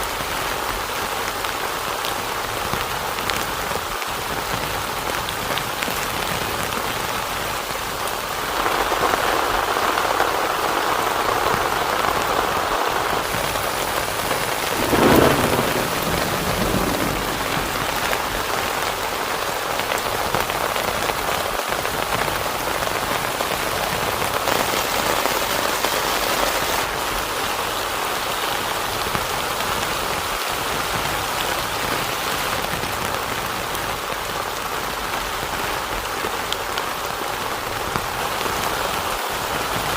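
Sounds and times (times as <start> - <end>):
heavy rain on a tent: 0.0 - 39.9
thunder: 13.2 - 19.4.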